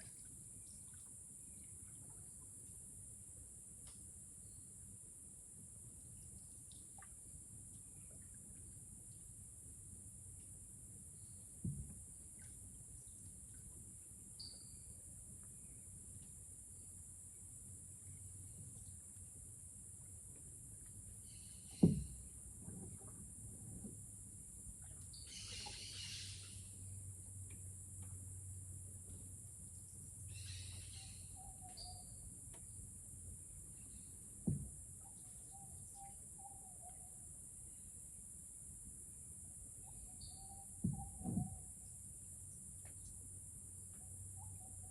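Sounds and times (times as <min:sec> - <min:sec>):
insect chorus: 0:00.0 - 0:44.9
low knock: 0:21.8 - 0:22.2, 0:34.4 - 0:34.8.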